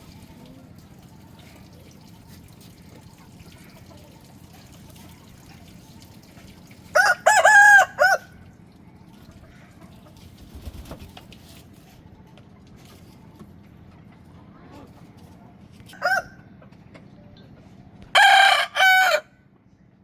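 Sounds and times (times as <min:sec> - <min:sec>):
rooster crowing: 0:06.9 - 0:08.4, 0:15.9 - 0:16.4, 0:18.1 - 0:19.3.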